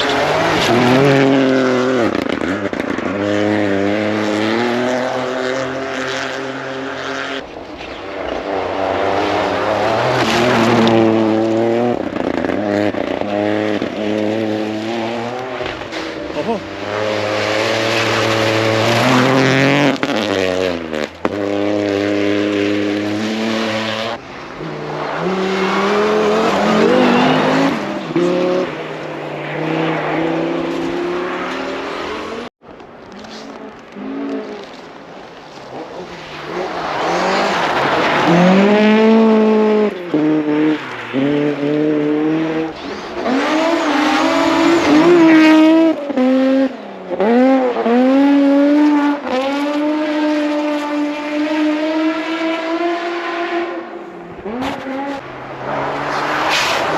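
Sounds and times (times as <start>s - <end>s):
rally car engines revving: 0.0s - 56.9s.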